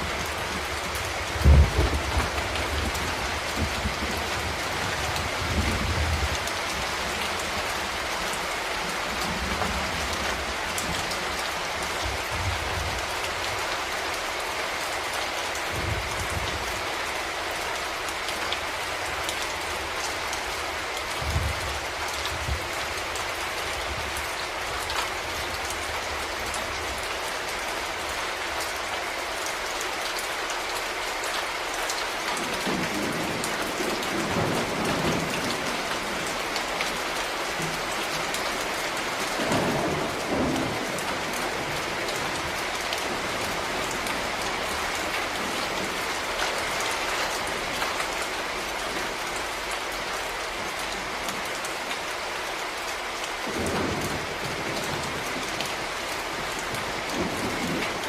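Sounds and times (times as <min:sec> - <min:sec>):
steady rain: 0:00.0 - 0:58.0
low thunder rumbling: 0:00.1 - 0:06.9.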